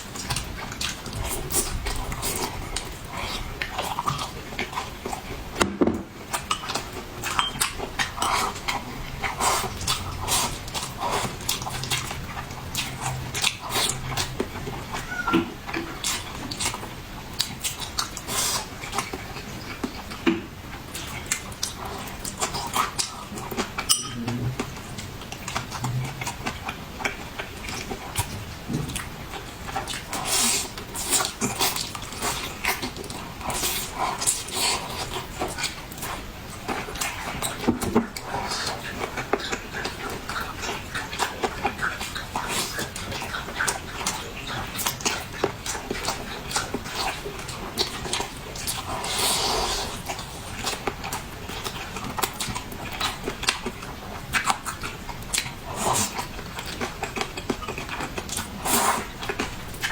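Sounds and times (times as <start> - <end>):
person chewing: 0.0 - 59.9
utensils clinking against dishes: 6.5 - 8.4, 23.8 - 24.4.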